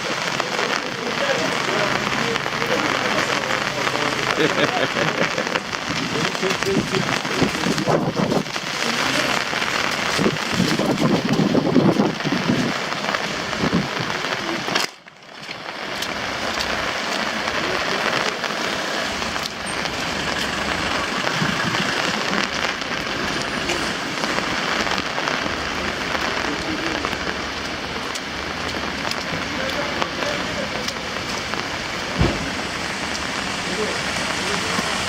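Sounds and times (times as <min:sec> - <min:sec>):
raindrops ticking: 0:00.0 - 0:35.0
steady rain falling: 0:00.0 - 0:35.0.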